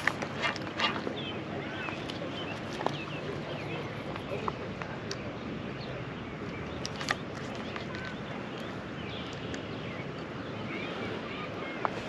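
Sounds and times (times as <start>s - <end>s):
small birds chirping: 0.0s - 12.0s.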